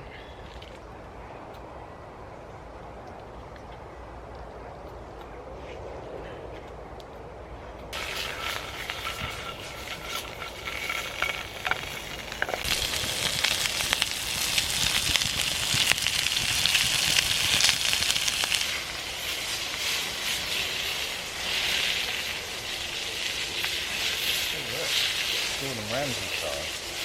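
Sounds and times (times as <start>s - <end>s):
sausages sizzling in a pan: 8.0s - 27.0s.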